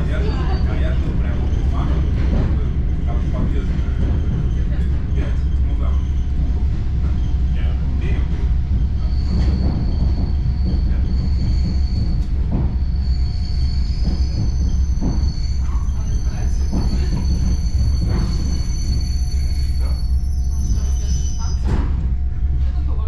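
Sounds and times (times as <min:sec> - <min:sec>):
train rumbling: 0:00.0 - 0:23.0
high-pitched wheel squeal: 0:08.9 - 0:22.0.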